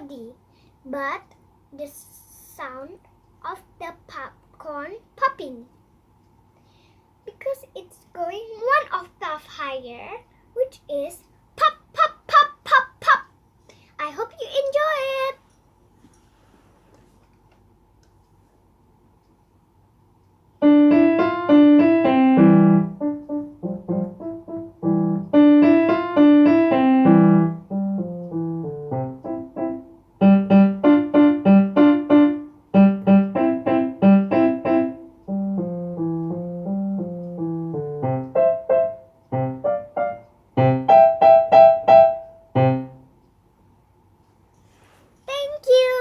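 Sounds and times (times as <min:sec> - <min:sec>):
piano playing simple piece: 0:20.6 - 0:43.2.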